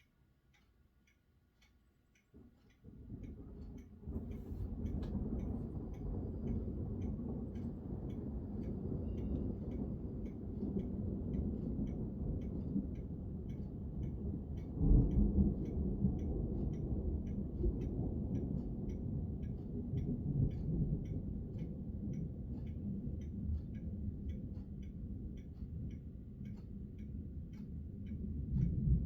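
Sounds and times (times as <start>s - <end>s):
light ticking: 0.0s - 29.0s
thunder rumbling: 2.8s - 23.1s.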